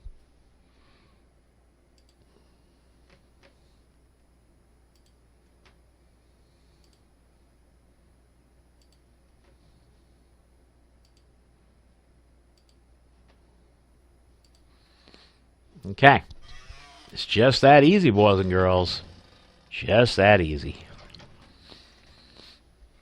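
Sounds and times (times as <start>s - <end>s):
low steady hum: 0.0s - 23.0s
faint short clicks: 4.9s - 5.8s.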